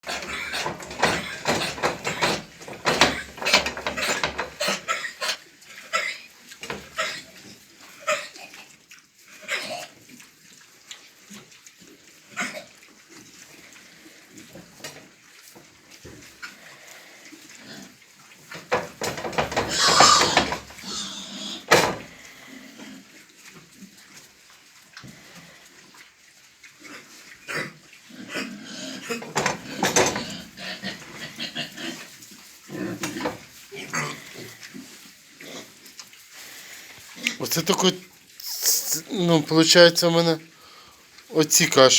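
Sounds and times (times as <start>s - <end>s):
pigs coughing: 0.0s - 8.7s, 9.4s - 10.0s, 12.3s - 12.8s, 18.7s - 23.0s, 26.8s - 32.1s, 32.7s - 34.6s
pigs grunting: 0.0s - 10.3s, 12.2s - 15.1s, 16.4s - 23.2s, 26.7s - 40.8s.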